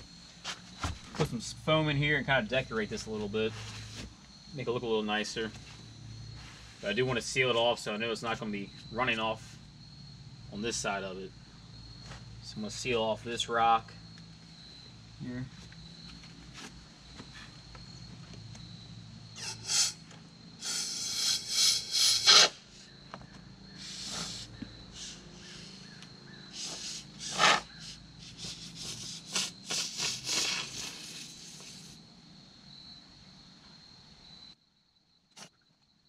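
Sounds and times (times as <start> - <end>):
foam sealant can hissing: 19.4 - 20.0, 20.6 - 22.6, 23.8 - 25.8, 26.6 - 32.0.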